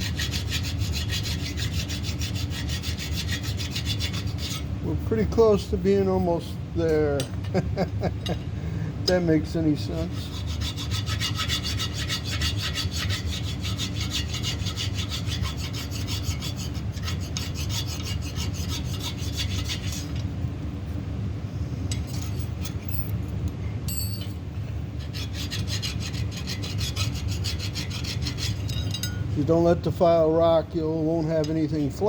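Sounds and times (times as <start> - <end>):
hand file rasping on metal: 0.0 - 4.7, 10.1 - 20.2, 25.0 - 28.9
steady low hum: 0.0 - 32.0.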